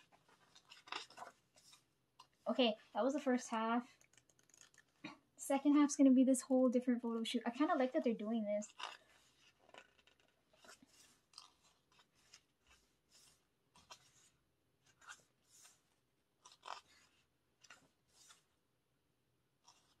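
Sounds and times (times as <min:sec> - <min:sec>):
pages rustling: 0:00.0 - 0:02.8, 0:03.9 - 0:05.1, 0:07.6 - 0:18.6, 0:19.6 - 0:20.0.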